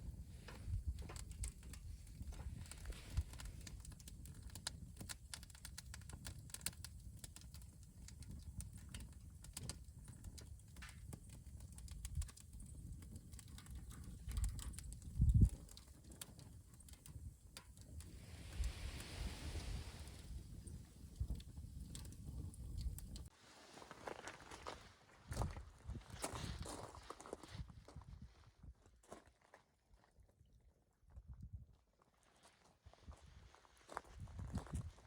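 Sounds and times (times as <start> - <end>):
campfire crackling and popping: 0.0 - 23.3.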